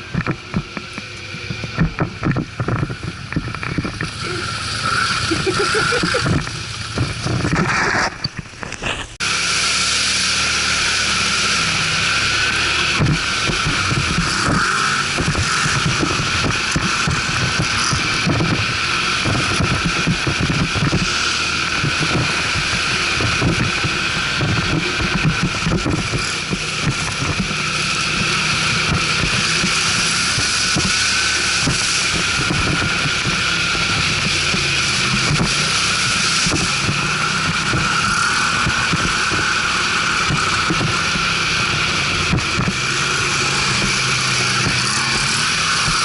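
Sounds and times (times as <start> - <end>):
atv engine running: 0.0 - 46.0
rough ride jolts: 0.0 - 46.0
wind buffeting microphone: 12.8 - 46.0.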